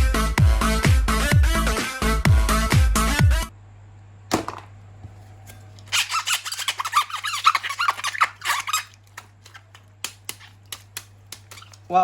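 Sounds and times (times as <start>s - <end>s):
electronic dance music: 0.0s - 3.5s
high wavering squeaks: 5.8s - 9.7s.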